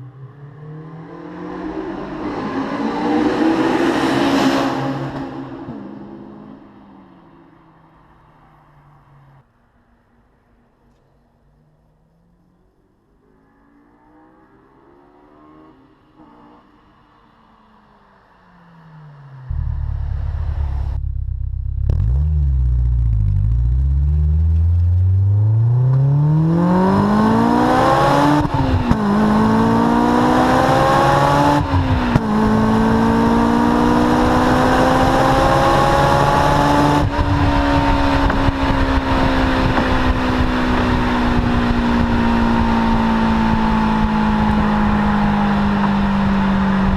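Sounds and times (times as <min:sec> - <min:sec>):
car engine revving: 0:18.6 - 0:46.9.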